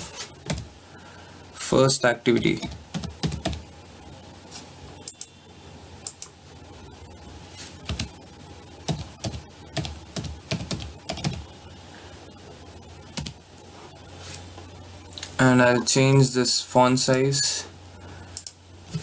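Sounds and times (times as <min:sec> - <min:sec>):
computer keyboard typing: 0:00.4 - 0:00.7, 0:02.3 - 0:03.7, 0:07.8 - 0:08.2, 0:08.8 - 0:11.5, 0:13.1 - 0:13.4.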